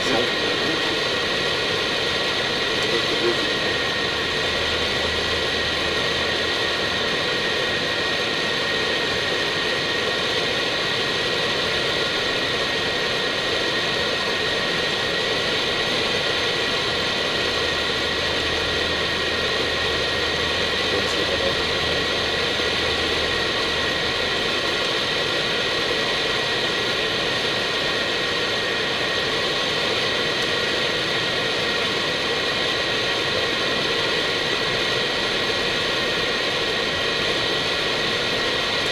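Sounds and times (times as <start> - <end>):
steady high whine: 0.0 - 38.9.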